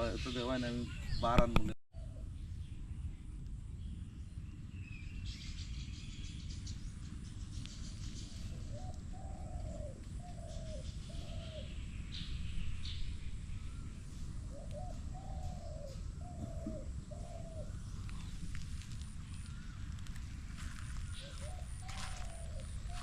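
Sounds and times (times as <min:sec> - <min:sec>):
dove cooing: 0:08.4 - 0:11.7, 0:14.4 - 0:19.8, 0:20.6 - 0:23.0
bird chirps: 0:20.6 - 0:23.0.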